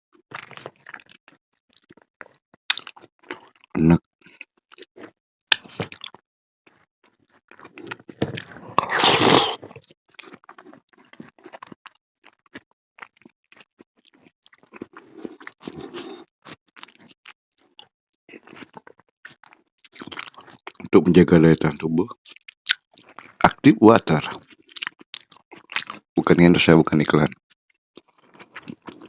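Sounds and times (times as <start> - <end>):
chewing and biting food: 0.1 - 21.0, 22.2 - 23.5, 24.2 - 26.1, 27.2 - 29.0
loud noisy mouth sound: 8.8 - 9.6.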